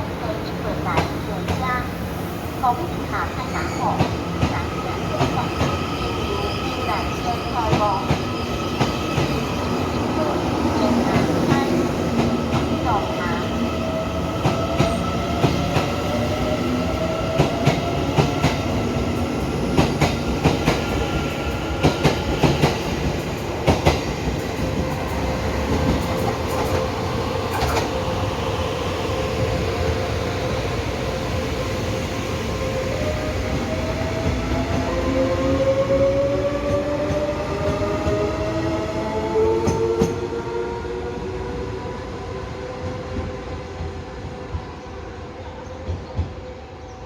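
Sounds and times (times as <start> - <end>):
train wheels clacking: 17.3 - 28.1.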